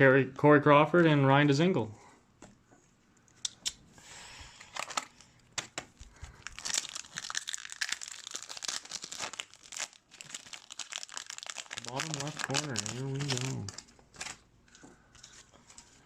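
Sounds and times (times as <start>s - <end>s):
plastic wrappers crinkling: 4.6s - 16.0s.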